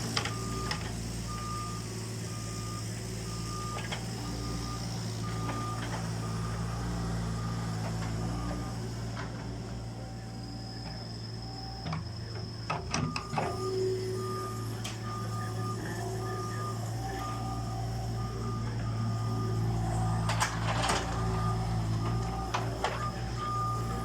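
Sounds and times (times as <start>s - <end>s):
excavator diesel engine running: 0.0s - 24.0s
warning alarm beeping: 11.4s - 24.0s.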